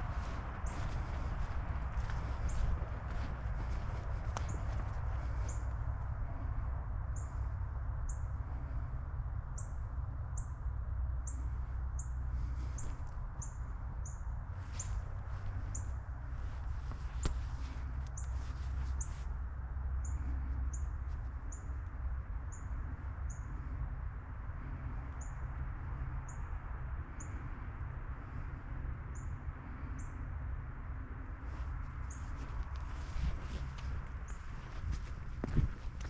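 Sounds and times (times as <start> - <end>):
wind on microphone: 0.0 - 6.8, 31.4 - 36.0.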